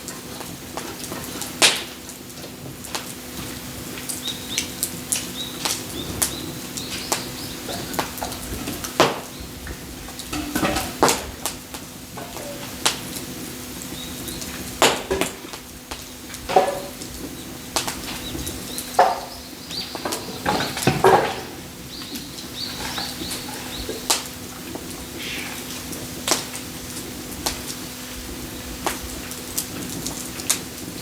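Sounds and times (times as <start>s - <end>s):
hard objects clattering: 7.0s - 13.1s, 16.4s - 24.9s.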